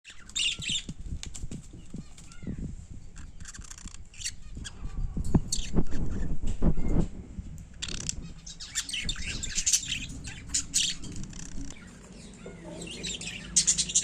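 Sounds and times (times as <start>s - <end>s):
budgerigar chirping: 7.9s - 14.0s.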